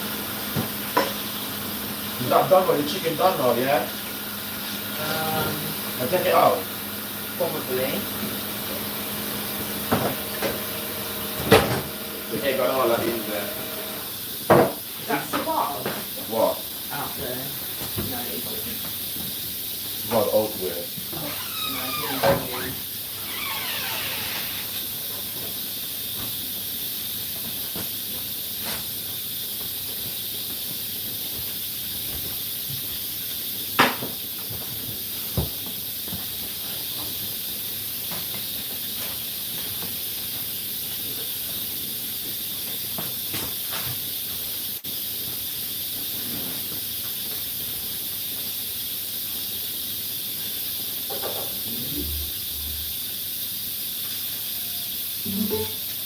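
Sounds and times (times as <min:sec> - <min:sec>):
dishwasher water spraying: 0:00.0 - 0:16.2.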